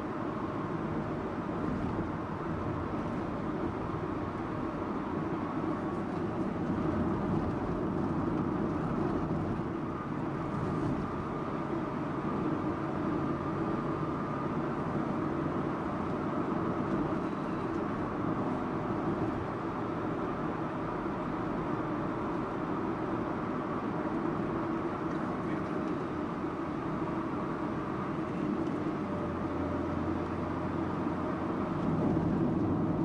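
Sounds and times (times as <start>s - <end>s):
car engine and tyre rumble: 0.0s - 33.0s.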